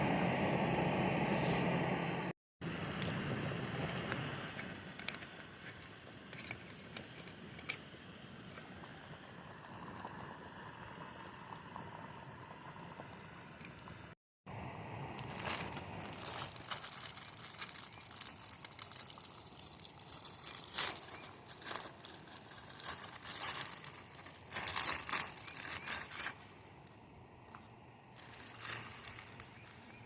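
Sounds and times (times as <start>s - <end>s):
crinkling and rustling: 15.2s - 30.0s.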